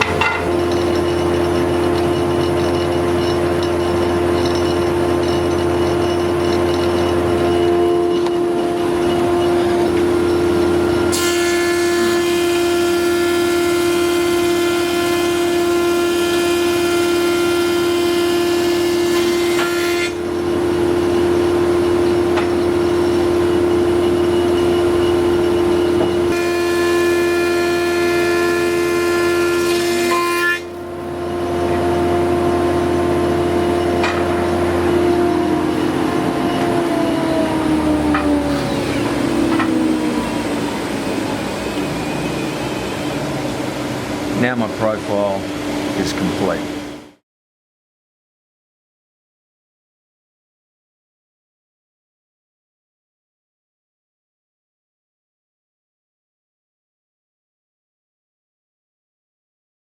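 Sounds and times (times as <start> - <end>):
thickness planer whining: 0.0 - 47.1
planer knives cutting boards: 6.6 - 20.2, 26.0 - 30.8.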